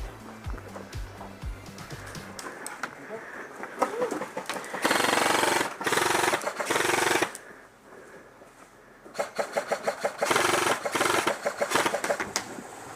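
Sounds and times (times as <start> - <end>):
airsoft gun automatic fire: 4.6 - 7.4, 9.1 - 12.3.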